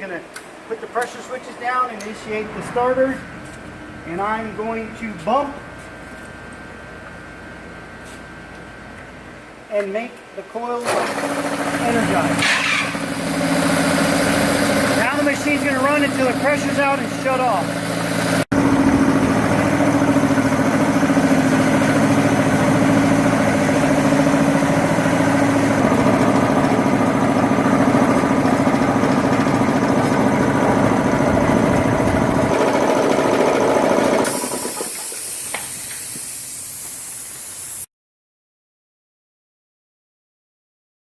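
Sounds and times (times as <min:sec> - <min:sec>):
air compressor running: 0:10.8 - 0:37.9
air hissing: 0:34.2 - 0:37.9.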